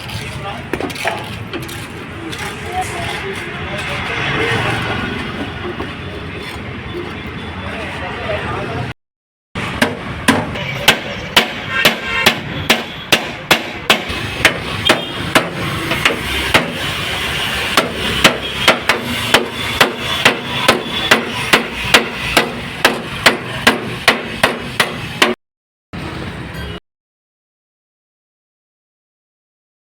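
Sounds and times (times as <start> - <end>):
hammer striking sheet metal: 9.6 - 25.4.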